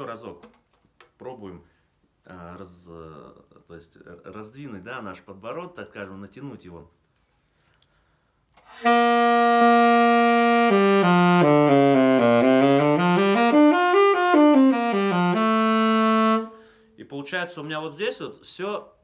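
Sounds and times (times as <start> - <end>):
saxophone playing: 8.6 - 16.8.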